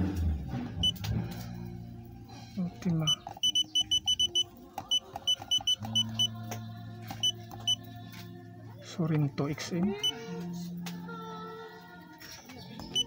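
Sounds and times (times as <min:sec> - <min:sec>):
scanner key beeps: 0:03.0 - 0:06.3, 0:07.2 - 0:07.8, 0:09.9 - 0:10.2.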